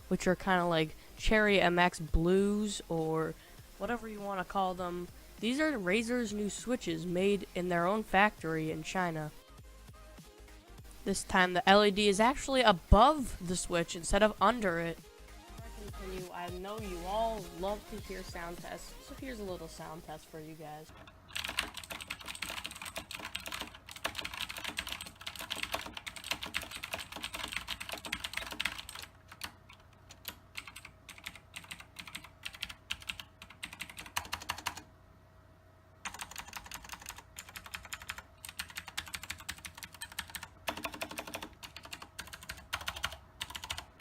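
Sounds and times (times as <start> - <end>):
mechanical keyboard typing: 21.3 - 34.9, 36.0 - 43.9.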